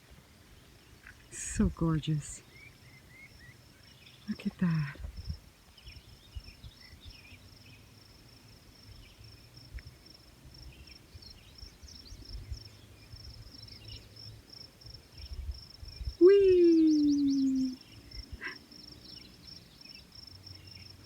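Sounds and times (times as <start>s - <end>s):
crickets chirping: 1.0s - 21.0s
low rumble on microphone: 4.9s - 7.1s
bird chirps: 16.0s - 20.9s.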